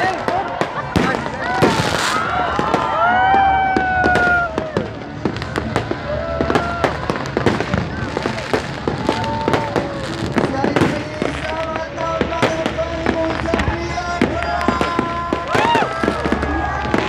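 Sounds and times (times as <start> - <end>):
fireworks bangs and crackling pops: 0.0 - 17.0
long whistling firework tones: 0.2 - 10.5.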